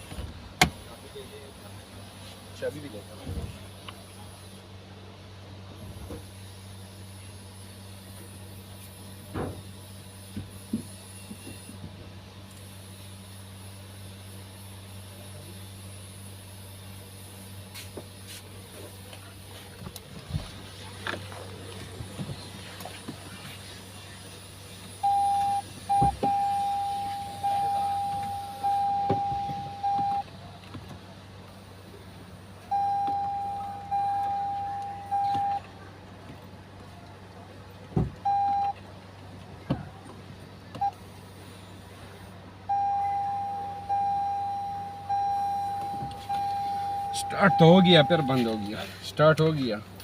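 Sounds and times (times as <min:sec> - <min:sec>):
car warning chime: 0:25.0 - 0:30.3, 0:32.7 - 0:35.7, 0:38.2 - 0:38.8, 0:42.7 - 0:49.0.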